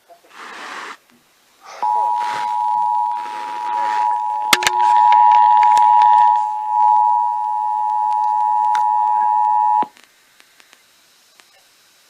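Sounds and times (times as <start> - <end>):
two-tone alert signal: 1.8 - 9.9.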